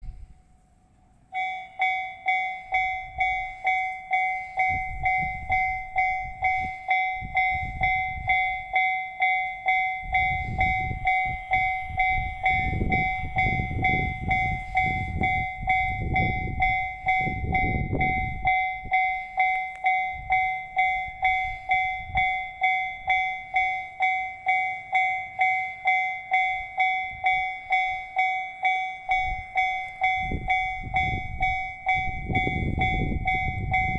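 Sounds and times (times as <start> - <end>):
train rumbling past: 0.0 - 33.9
level crossing alarm ringing: 1.2 - 33.9.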